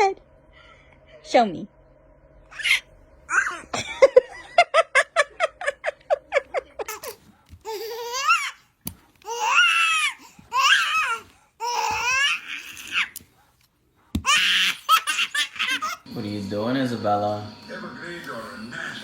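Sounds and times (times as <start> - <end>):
baby laughing: 2.5 - 4.1, 6.3 - 13.2, 14.2 - 16.1.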